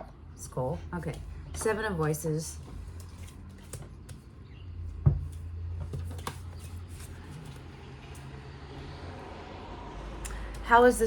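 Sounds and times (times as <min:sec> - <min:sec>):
low steady hum: 0:00.0 - 0:11.0
cards shuffling: 0:02.6 - 0:04.3, 0:05.2 - 0:07.8.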